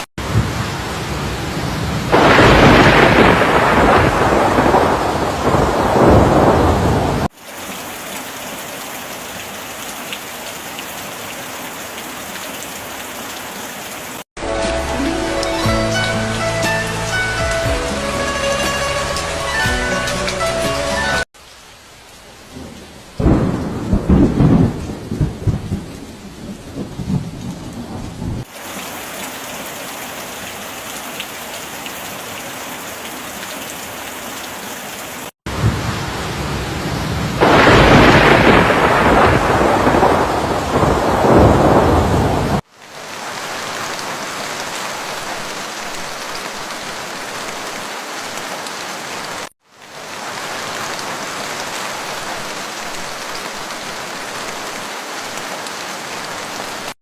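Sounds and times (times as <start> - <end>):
steady rain: 0.0 - 14.3, 16.7 - 57.0
rolls of thunder: 2.1 - 14.2, 23.2 - 25.9, 37.4 - 42.6.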